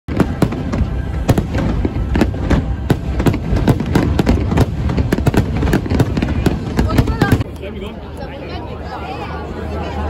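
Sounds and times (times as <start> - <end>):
fireworks bangs: 0.1 - 7.5.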